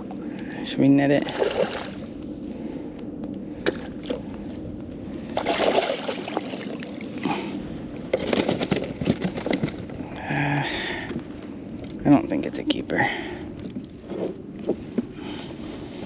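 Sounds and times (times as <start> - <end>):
water splashing beside kayak: 1.3 - 2.2, 5.3 - 7.3.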